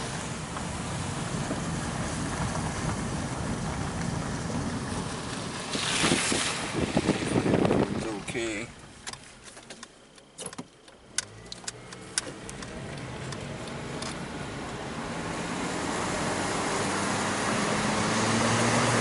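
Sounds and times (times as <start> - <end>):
car engine accelerating: 0.0 - 8.8, 11.0 - 19.0
road noise: 0.0 - 19.0
clicks and knocks inside car: 8.8 - 14.2.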